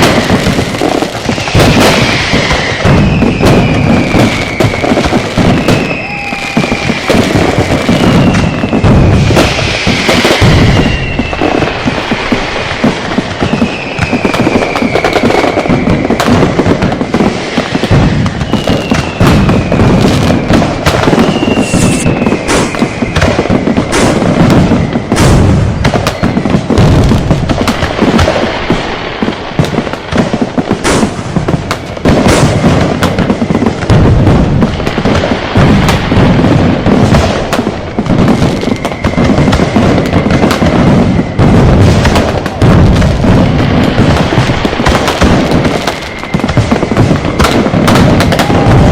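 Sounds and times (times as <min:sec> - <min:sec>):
falling firework whistle: 0:00.0 - 0:48.9
firecrackers and fireworks exploding: 0:00.0 - 0:48.9.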